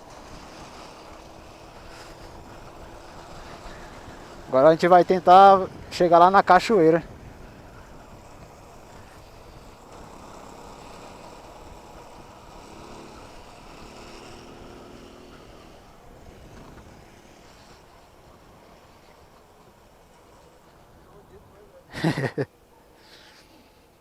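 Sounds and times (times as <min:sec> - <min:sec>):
wind noise: 0:00.0 - 0:12.6
tyres on road: 0:00.0 - 0:24.0.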